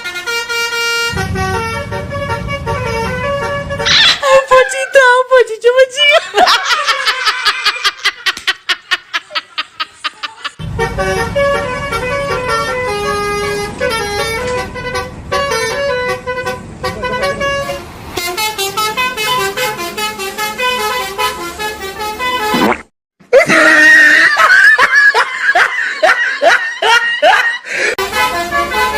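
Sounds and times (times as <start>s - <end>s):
bus horn playing a tune: 0.0s - 4.7s, 10.6s - 22.6s, 27.9s - 28.9s
rapid short horn pulses: 0.0s - 4.7s
low rumble: 1.1s - 4.0s.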